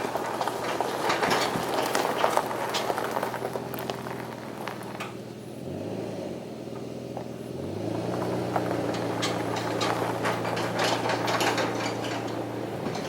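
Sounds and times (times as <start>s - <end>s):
clicking and rattling: 0.0s - 5.2s, 8.1s - 13.0s
vehicle engine pulling away: 0.0s - 13.0s.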